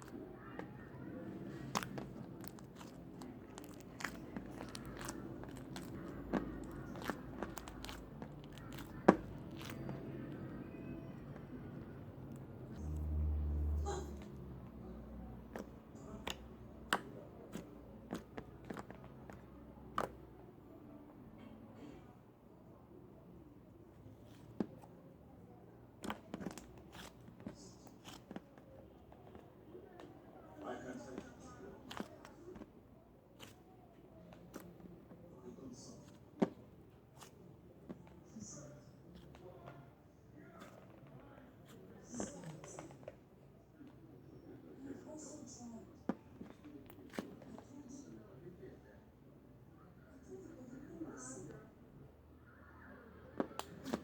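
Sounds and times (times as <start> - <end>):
slime crackling and popping: 1.5 - 10.0.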